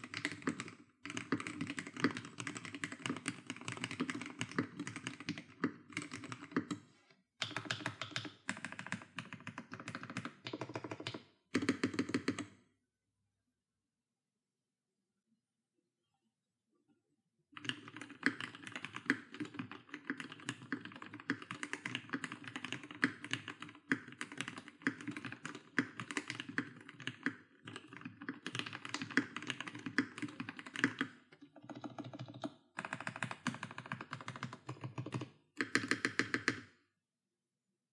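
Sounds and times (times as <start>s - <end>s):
fast typing on mechanical keyboard: 0.0s - 6.8s, 7.4s - 12.5s, 17.6s - 36.7s.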